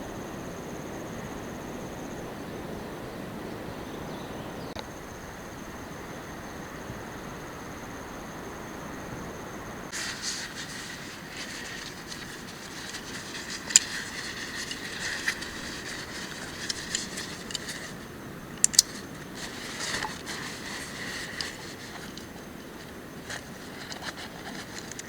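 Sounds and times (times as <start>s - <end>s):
campfire crackling: 9.9s - 25.0s
fire popping: 9.9s - 25.0s.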